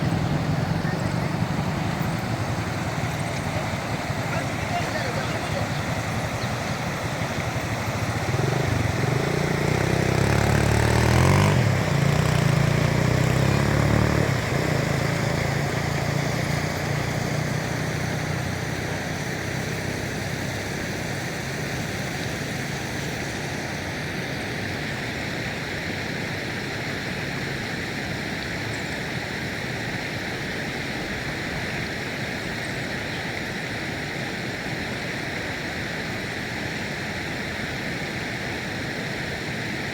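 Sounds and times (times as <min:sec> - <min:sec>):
motor engine passing: 0:00.0 - 0:24.1
river water flowing: 0:00.0 - 0:39.9.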